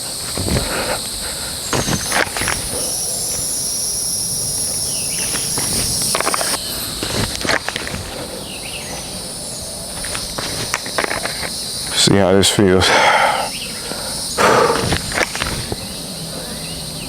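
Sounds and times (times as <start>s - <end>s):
footsteps or gear scuffs and clicks: 0.0s - 3.6s, 4.9s - 9.2s, 9.9s - 11.6s
insects droning: 0.0s - 17.0s.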